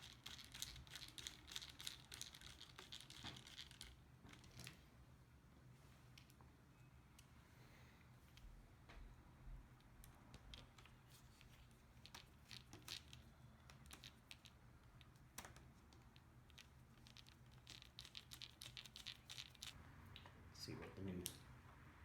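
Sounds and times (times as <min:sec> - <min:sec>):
faint clicks of small parts: 0:09.8 - 0:20.4.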